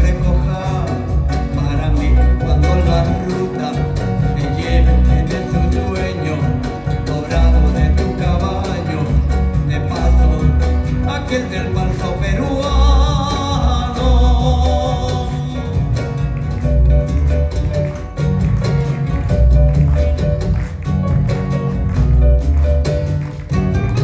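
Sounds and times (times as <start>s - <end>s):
guitar: 0.0s - 24.0s
live band playing: 0.0s - 24.0s
pulsing bass beat: 0.0s - 24.0s.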